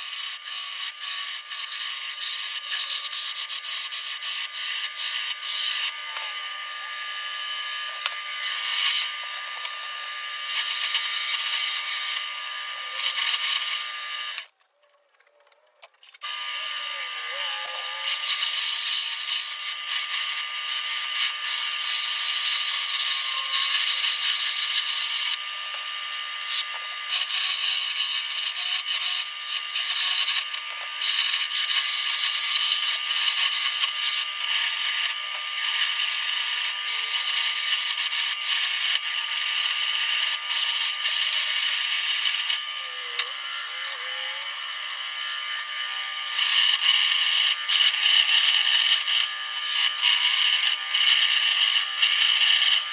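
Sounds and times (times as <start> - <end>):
lathe hum: 0.0 - 14.5, 16.3 - 52.9
tool scraping turning wood: 26.4 - 52.9.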